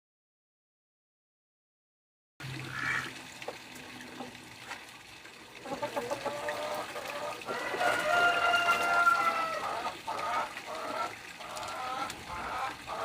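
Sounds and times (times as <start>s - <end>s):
chickens clucking: 5.6s - 13.0s.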